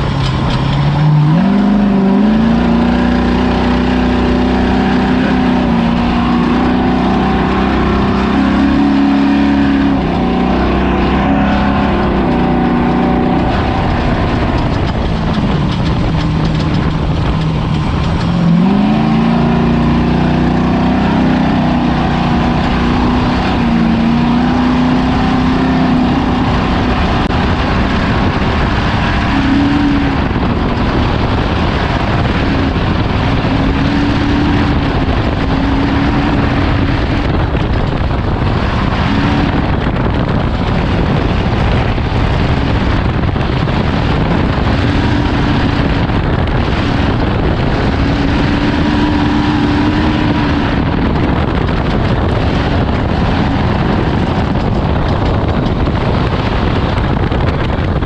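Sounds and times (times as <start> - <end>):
road and wind roar: 0.0 - 58.0
truck engine running hard: 0.0 - 58.0.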